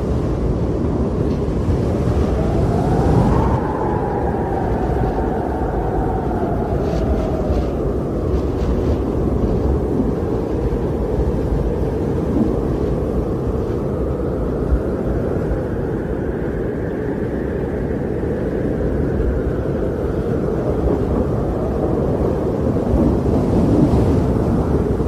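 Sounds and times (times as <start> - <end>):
strong wind blowing: 0.0 - 25.0.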